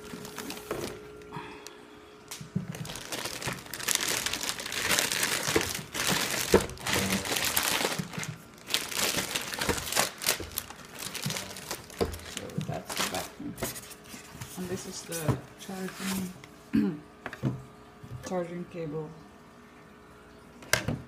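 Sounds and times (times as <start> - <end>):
plastic packaging crinkling: 0.0 - 1.3, 2.3 - 14.8.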